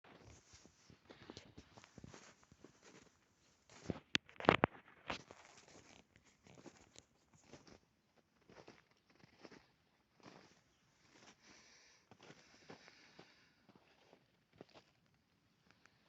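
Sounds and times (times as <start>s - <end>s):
crunching and rustling: 0.1s - 11.4s.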